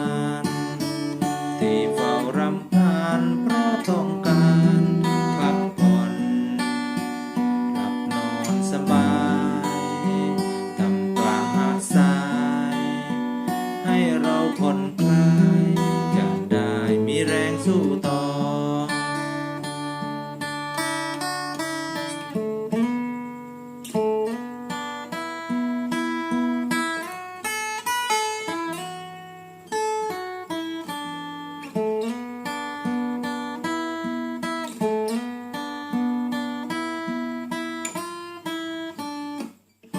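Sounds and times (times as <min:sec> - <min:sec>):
acoustic guitar melody: 0:00.0 - 0:39.9.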